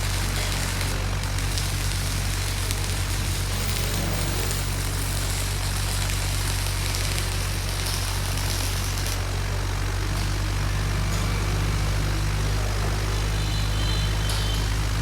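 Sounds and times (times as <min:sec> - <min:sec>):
welding machine humming: 0:00.0 - 0:15.0.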